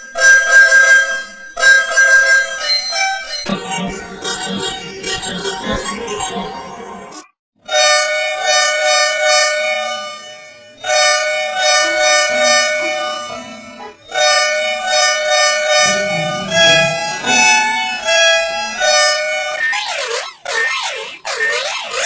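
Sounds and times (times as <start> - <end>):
bus horn blasts: 7.7 - 19.6.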